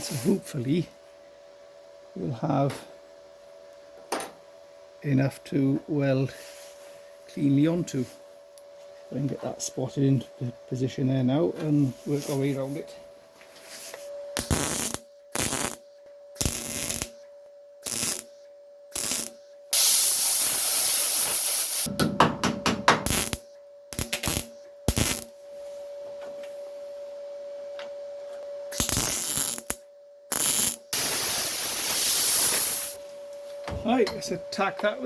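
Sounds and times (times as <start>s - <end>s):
welder crackling and hissing: 0.0s - 0.6s, 13.9s - 15.8s, 16.4s - 17.2s, 17.8s - 21.9s, 23.0s - 25.4s, 28.7s - 33.0s.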